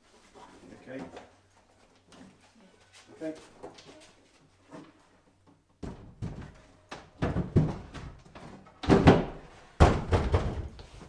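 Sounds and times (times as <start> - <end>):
wooden knocks and thuds: 5.8 - 11.0.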